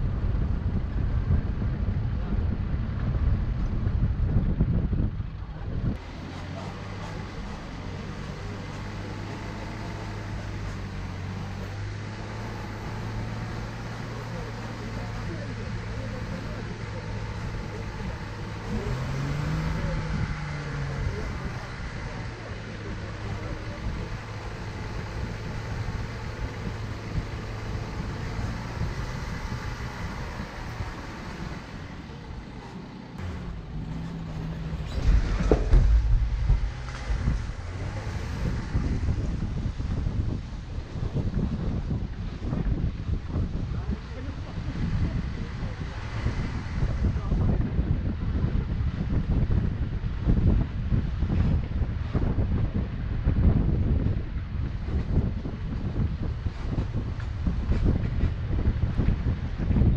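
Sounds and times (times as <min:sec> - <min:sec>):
car engine running: 0:00.0 - 0:59.9
rough rumbling road noise: 0:00.0 - 0:59.9.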